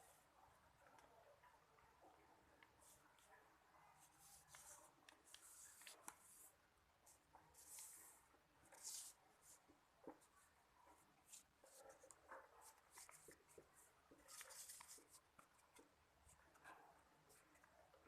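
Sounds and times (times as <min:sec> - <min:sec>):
paper being folded and creased: 0:04.1 - 0:06.5, 0:07.6 - 0:08.1, 0:12.7 - 0:15.8.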